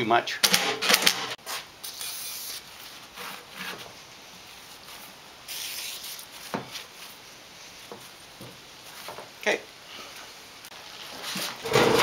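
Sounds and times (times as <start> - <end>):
hissy scrapes: 1.4 - 7.8.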